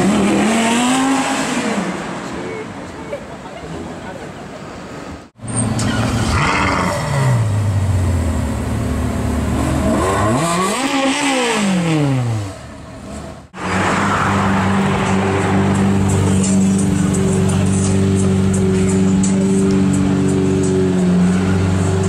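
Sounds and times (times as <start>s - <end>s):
car engine revving: 5.6s - 22.0s.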